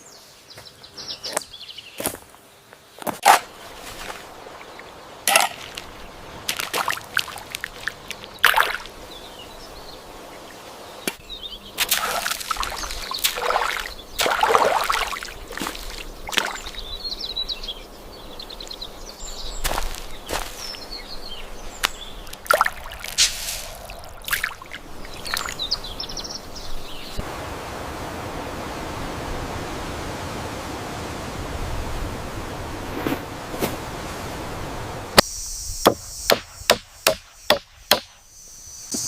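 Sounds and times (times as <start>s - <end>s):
birds chirping: 0.0s - 2.2s, 2.8s - 27.2s
steady rush of water: 3.4s - 11.2s, 11.8s - 16.9s, 21.8s - 35.2s
water splashing and pouring: 5.2s - 9.0s, 11.8s - 16.7s, 22.3s - 25.6s.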